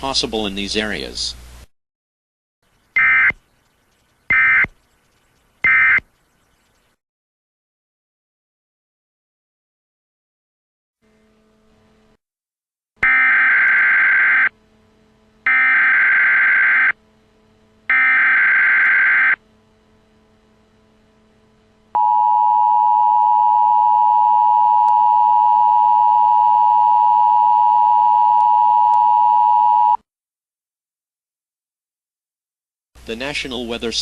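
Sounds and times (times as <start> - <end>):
buzzy digital data bursts: 3.0 - 7.0, 17.9 - 19.4.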